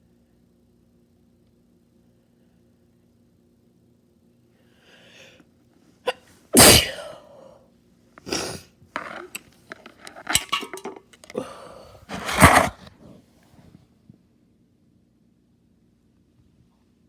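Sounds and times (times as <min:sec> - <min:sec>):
person sneezing wetly: 0:06.1 - 0:07.5, 0:08.2 - 0:08.7.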